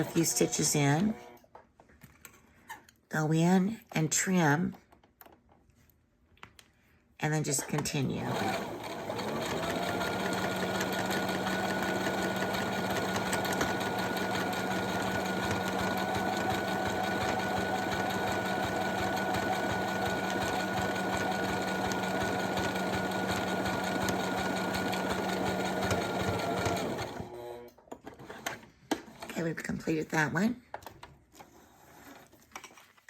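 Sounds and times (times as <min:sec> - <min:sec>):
sewing machine running: 0:08.1 - 0:27.6.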